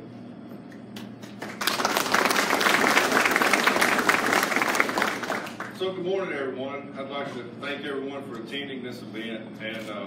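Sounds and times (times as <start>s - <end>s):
audience applauding: 1.3s - 5.8s.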